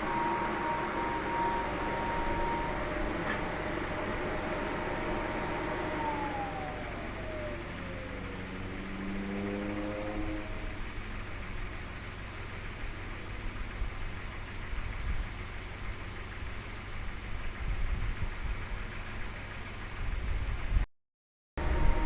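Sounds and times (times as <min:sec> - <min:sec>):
car engine idling: 0:00.0 - 0:20.4, 0:21.6 - 0:22.0.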